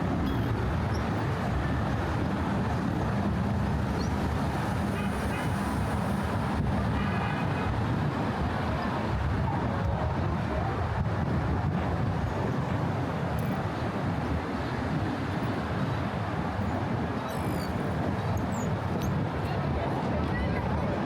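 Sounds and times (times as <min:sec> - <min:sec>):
faint voices: 0:16.4 - 0:21.0.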